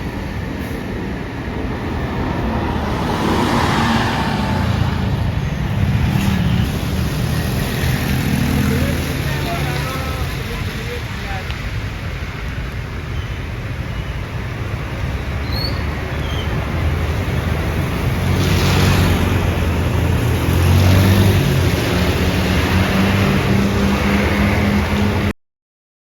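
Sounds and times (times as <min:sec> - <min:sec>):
bus diesel engine hum: 0:00.0 - 0:12.3
road traffic: 0:00.0 - 0:25.4.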